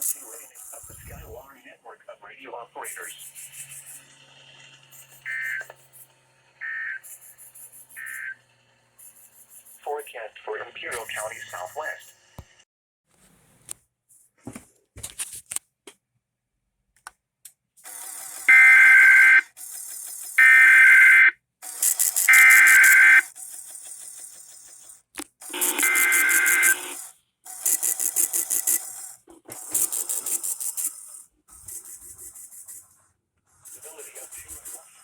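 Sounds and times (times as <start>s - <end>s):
screeching data bursts: 4.9s - 5.9s, 6.6s - 8.4s, 18.5s - 19.4s, 20.4s - 23.2s, 25.5s - 27.0s
buzzing data bursts: 5.0s - 5.9s, 6.6s - 8.4s, 18.5s - 19.4s, 21.9s - 23.3s, 25.5s - 27.0s.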